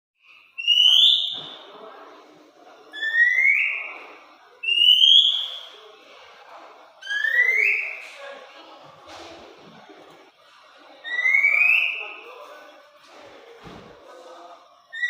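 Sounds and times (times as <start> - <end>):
bird chattering song: 0.2 - 1.6, 2.9 - 5.8, 7.0 - 8.0, 11.0 - 12.2.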